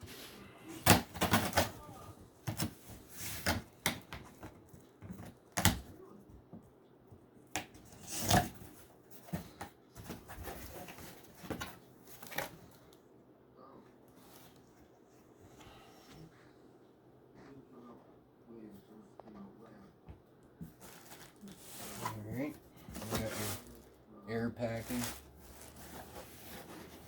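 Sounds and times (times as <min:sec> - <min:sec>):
cardboard box scraping and rustling: 0:10.0 - 0:12.5, 0:20.8 - 0:23.8, 0:24.6 - 0:27.0.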